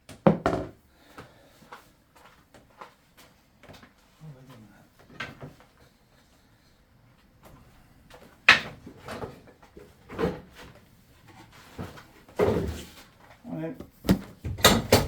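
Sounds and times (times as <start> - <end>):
plywood knocking on workbench: 0.3 - 0.7.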